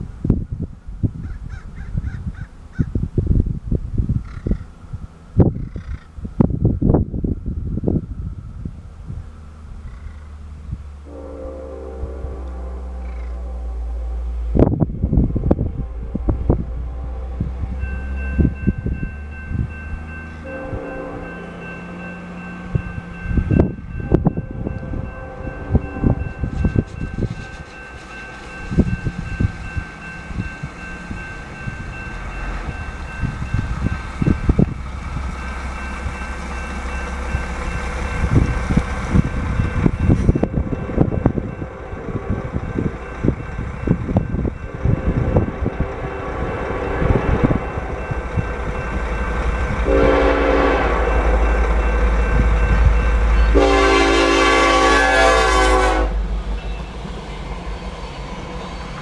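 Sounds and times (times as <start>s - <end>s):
diesel locomotive engine rumble: 0.0s - 59.0s
locomotive air horn blasts: 11.0s - 18.0s, 20.4s - 21.7s, 23.9s - 28.2s, 44.6s - 48.1s, 49.8s - 51.6s, 53.5s - 56.2s.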